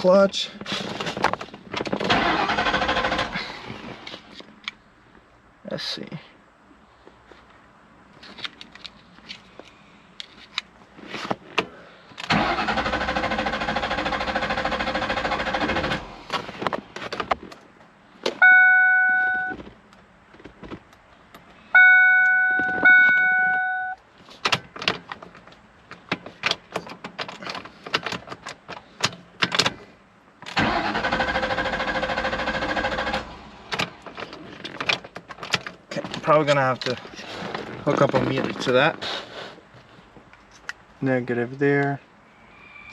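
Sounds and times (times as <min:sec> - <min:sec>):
starter cranking engine: 0:01.9 - 0:03.5, 0:12.2 - 0:16.2, 0:30.5 - 0:33.3
electronic chime tones: 0:18.4 - 0:19.5, 0:21.8 - 0:24.0.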